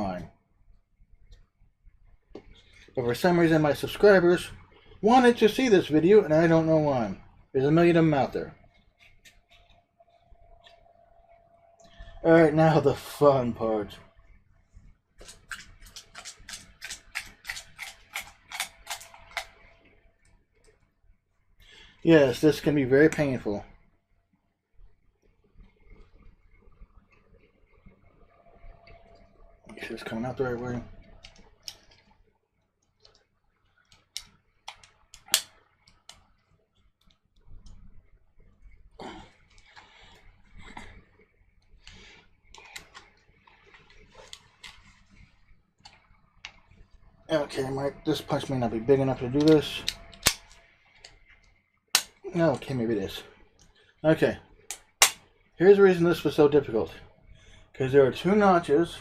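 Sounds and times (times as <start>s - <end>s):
sharp metallic clicks: 49.4s - 51.2s, 54.7s - 55.2s.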